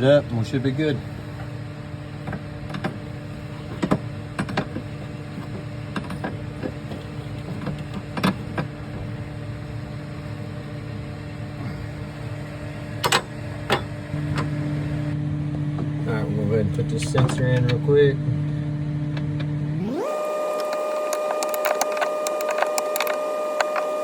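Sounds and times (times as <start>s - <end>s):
steady machine hum: 0.0s - 24.0s
hand tools clicking and knocking: 3.7s - 8.7s, 20.6s - 23.9s.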